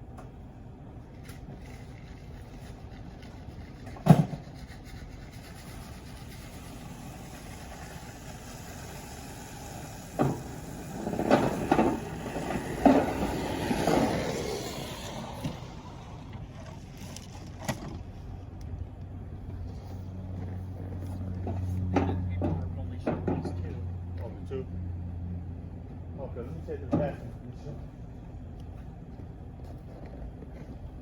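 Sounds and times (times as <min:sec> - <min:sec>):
steady low rumble: 0:04.9 - 0:31.0
knocks and clunks: 0:10.2 - 0:14.1, 0:21.4 - 0:23.7.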